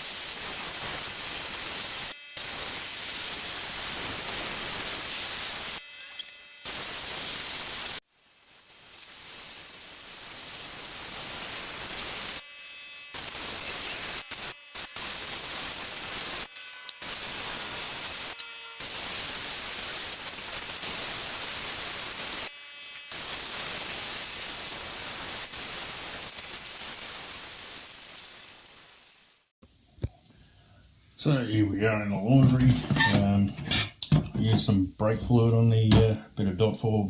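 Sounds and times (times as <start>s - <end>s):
compressed air spray hissing: 0.0s - 5.8s, 6.7s - 12.4s, 13.1s - 22.5s, 23.1s - 29.5s.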